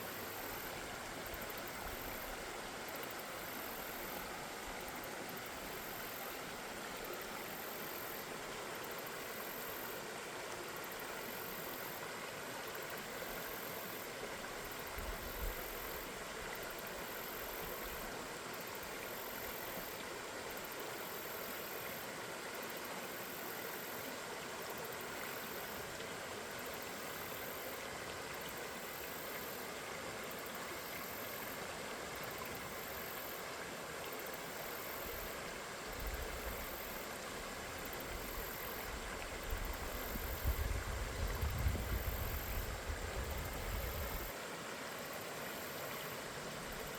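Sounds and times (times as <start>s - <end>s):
river water flowing: 0.0s - 46.9s.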